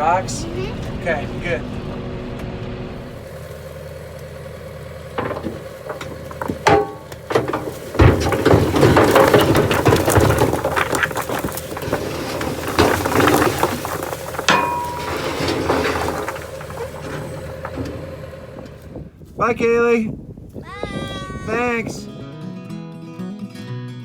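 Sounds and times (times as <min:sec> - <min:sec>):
tractor diesel engine running: 0:00.0 - 0:22.1
rocks clattering from dump box: 0:03.0 - 0:19.4.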